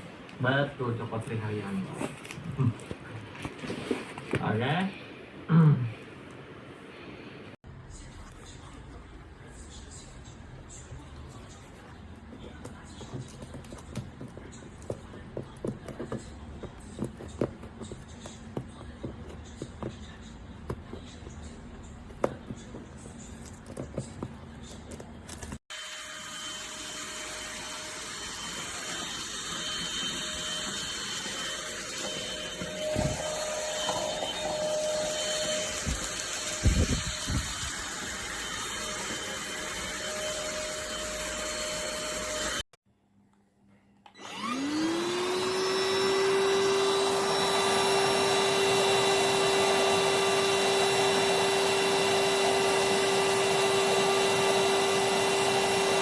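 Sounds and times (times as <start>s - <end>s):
handheld vacuum cleaner running: 25.7s - 42.6s, 44.2s - 56.0s.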